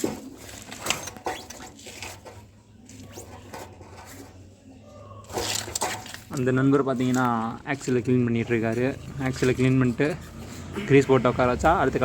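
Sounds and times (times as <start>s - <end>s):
metal parts scraping and clicking: 0.0s - 4.5s, 5.2s - 8.0s.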